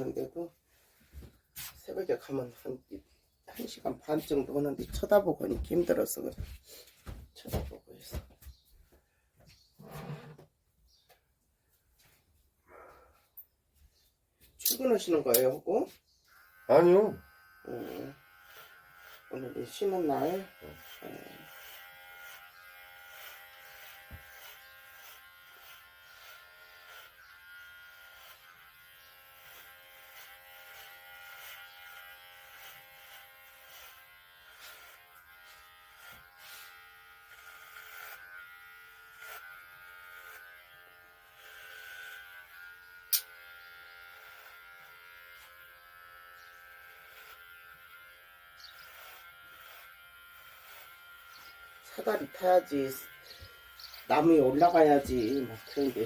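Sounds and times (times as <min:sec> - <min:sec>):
electric hair clipper buzzing: 0:16.2 - 0:56.0.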